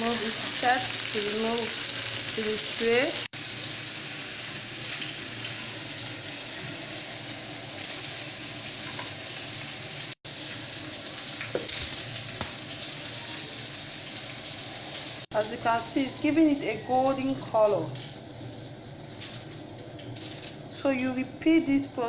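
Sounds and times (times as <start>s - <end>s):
meat sizzling in a frying pan: 0.0s - 20.7s.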